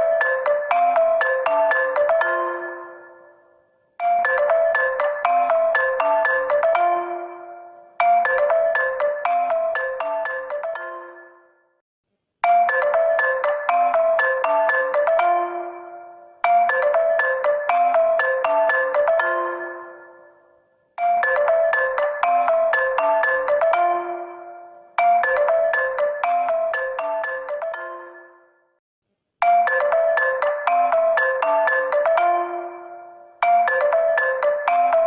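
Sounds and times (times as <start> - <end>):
mallet percussion ringtone: 0.0 - 11.6, 12.4 - 20.4, 21.0 - 28.8, 29.4 - 35.0.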